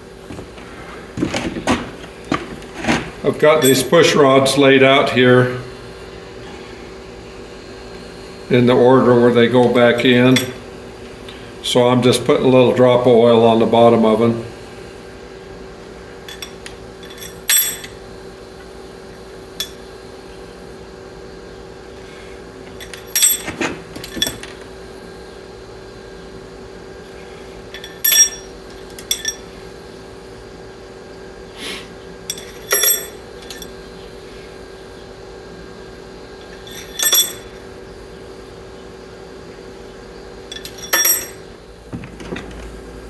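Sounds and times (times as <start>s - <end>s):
steady hum: 0.0s - 43.0s
metal push rods clinking: 27.8s - 29.4s, 32.3s - 33.7s, 36.6s - 37.5s, 40.5s - 41.4s.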